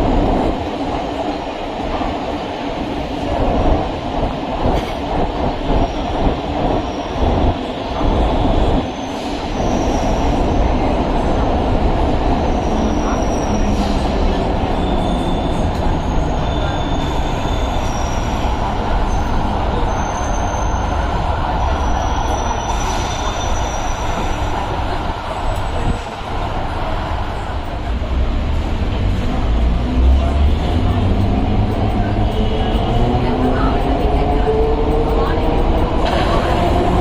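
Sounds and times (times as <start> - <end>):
train wheels clattering on rail: 0.1 - 10.3
high wheel squeals: 14.7 - 21.1.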